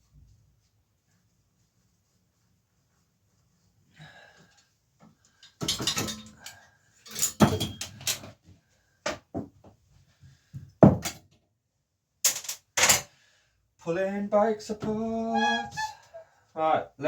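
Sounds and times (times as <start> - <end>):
bike parts and tools clanking: 5.3 - 8.4, 12.3 - 13.1.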